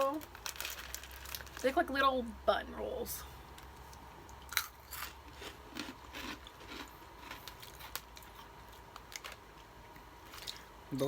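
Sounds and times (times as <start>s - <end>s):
crunchy snacks being chewed: 0.1s - 1.7s, 3.6s - 10.8s.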